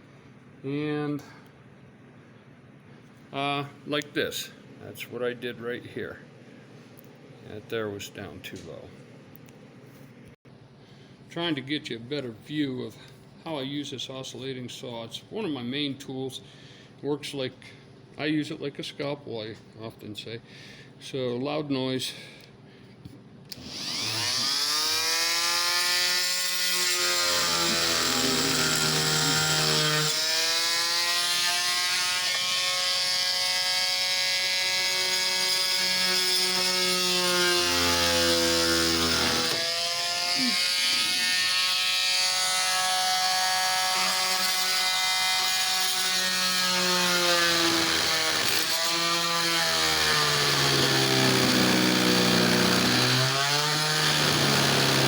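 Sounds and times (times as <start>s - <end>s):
multi-tool sawing into wood: 23.5s - 55.0s.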